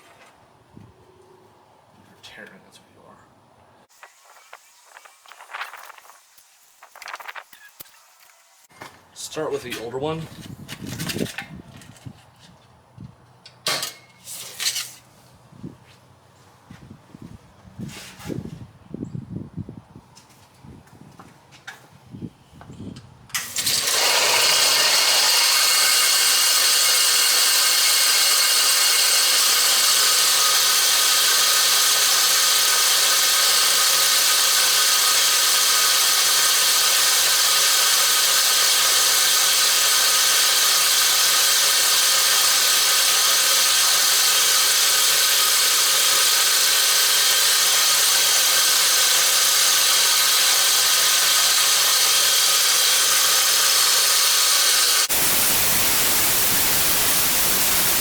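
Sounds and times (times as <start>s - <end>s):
belt grinder grinding steel: 23.4s - 58.0s
motor hum: 23.6s - 58.0s.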